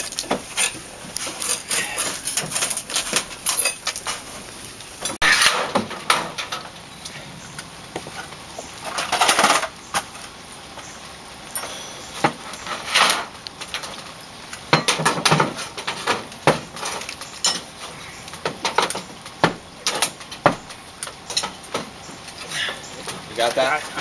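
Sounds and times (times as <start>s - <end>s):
tools knocking and clinking: 0.0s - 4.2s, 14.7s - 17.7s.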